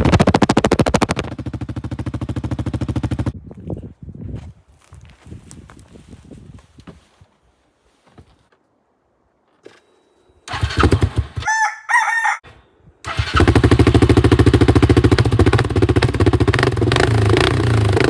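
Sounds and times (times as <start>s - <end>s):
engine starting and idling: 10.5s - 11.4s, 13.0s - 18.0s
rooster crowing: 11.4s - 12.6s.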